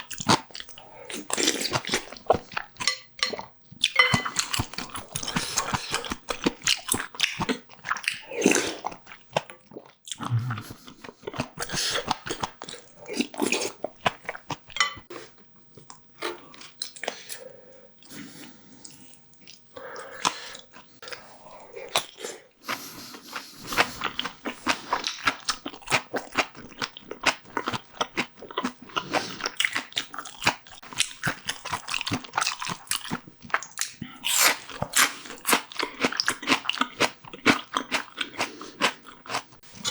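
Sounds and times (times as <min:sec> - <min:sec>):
person biting and chewing: 0:31.0 - 0:39.9.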